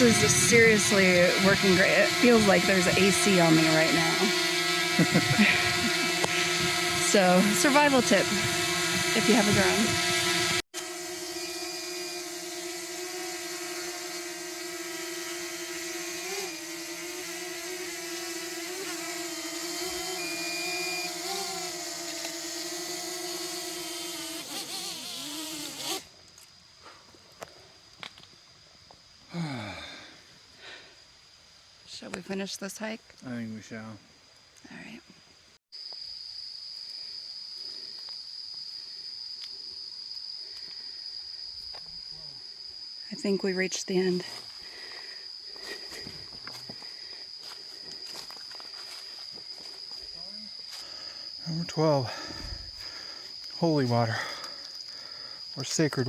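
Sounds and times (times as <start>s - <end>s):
drone propellers whining: 0.0s - 26.1s
insects droning: 0.0s - 56.0s.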